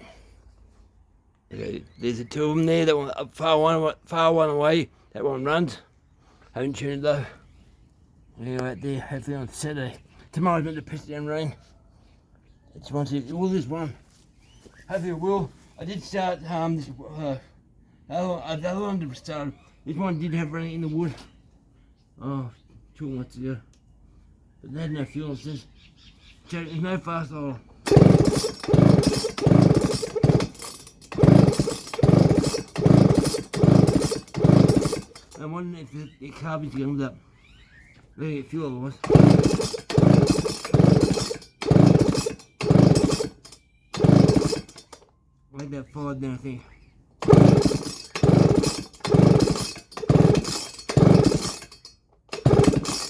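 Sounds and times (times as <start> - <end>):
chainsaw engine cranking: 27.8 - 35.5, 39.0 - 45.1, 47.2 - 53.0
chainsaw recoil starter pulls: 27.8 - 35.5, 39.0 - 45.1, 47.2 - 53.0.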